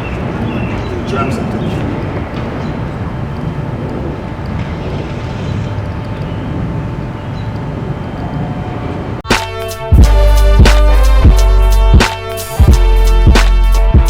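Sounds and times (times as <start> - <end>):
low rumbling background noise: 0.0 - 9.3
music with heavy bass and drums: 9.3 - 14.0.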